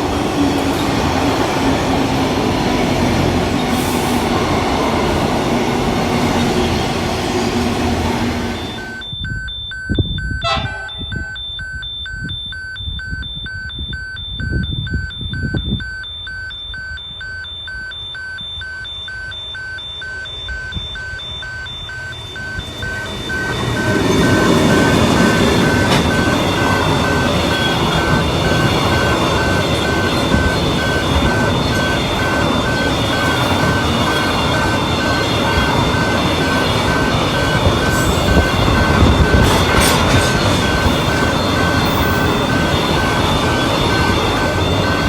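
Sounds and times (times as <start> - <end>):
train passing: 0.0 - 9.1, 10.4 - 11.3, 19.5 - 45.0
level crossing warning bell: 0.0 - 45.0.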